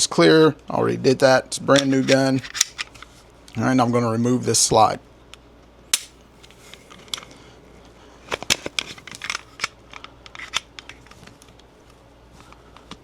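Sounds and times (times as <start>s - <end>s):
pistol slide clicking and rattling: 1.7s - 3.1s, 6.0s - 7.3s, 8.3s - 11.2s
sharp metallic click: 6.0s - 6.2s.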